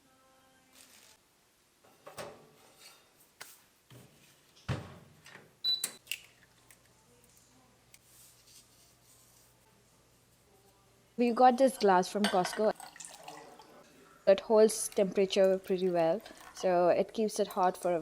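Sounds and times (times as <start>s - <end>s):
dishes and utensils clattering: 11.6s - 13.2s.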